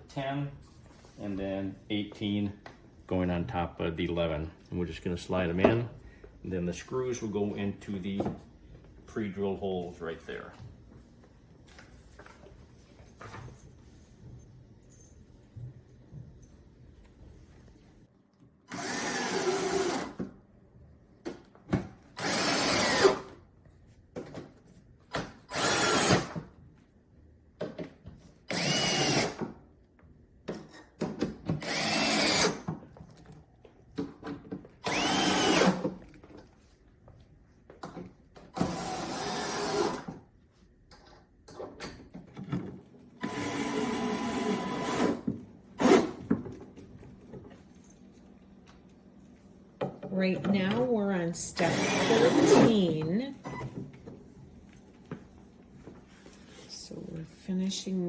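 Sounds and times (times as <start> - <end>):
cordless drill driving screws: 18.7 - 20.2, 22.2 - 23.4, 25.5 - 26.4, 28.5 - 29.5, 31.6 - 32.7, 34.8 - 36.0, 38.6 - 40.2, 43.2 - 46.2, 51.6 - 52.9.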